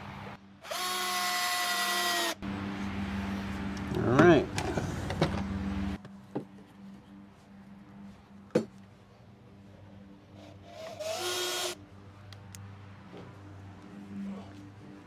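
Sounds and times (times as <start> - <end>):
cordless drill driving screw into wood: 0.7 - 2.4, 10.7 - 11.8.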